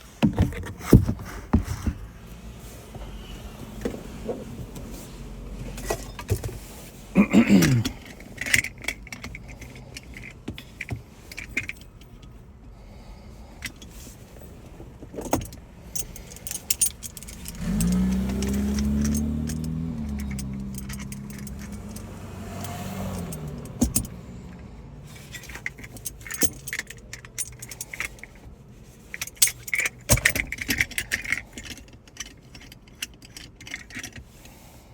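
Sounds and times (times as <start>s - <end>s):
metal tools clicking and clinking: 7.2s - 12.4s, 15.2s - 24.2s, 25.1s - 28.4s, 29.0s - 34.2s.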